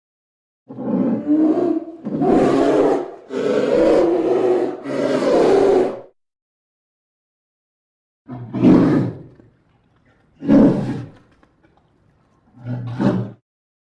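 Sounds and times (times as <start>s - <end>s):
polar bear roaring: 0.7s - 6.1s, 8.3s - 9.4s, 10.4s - 11.2s, 12.6s - 13.4s.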